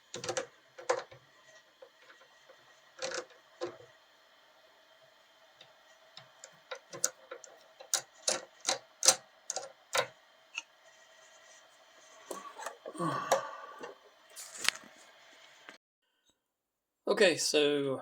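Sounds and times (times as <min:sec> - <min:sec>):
metal objects clicking and knocking: 0:00.1 - 0:01.2, 0:03.0 - 0:03.8, 0:06.4 - 0:10.1.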